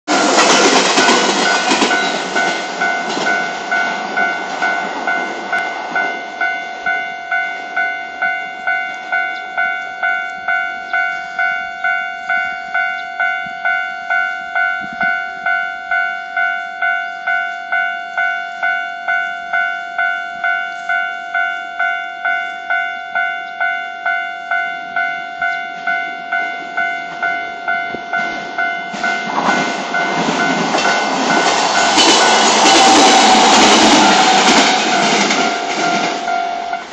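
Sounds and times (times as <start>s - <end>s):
train rushing past: 0.1s - 7.0s, 28.2s - 36.9s
level crossing alarm bell: 0.1s - 36.9s.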